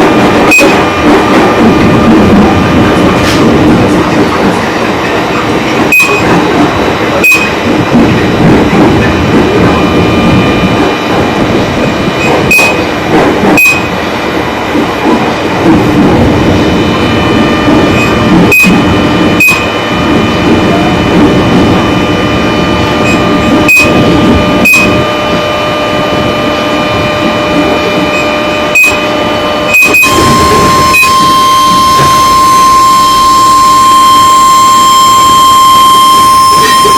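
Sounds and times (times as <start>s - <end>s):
wheels clacking over rail joints: 0.0s - 9.9s, 10.6s - 16.3s, 27.2s - 31.2s
train rumbling on track: 0.0s - 36.9s
faint whining tones: 16.5s - 36.9s.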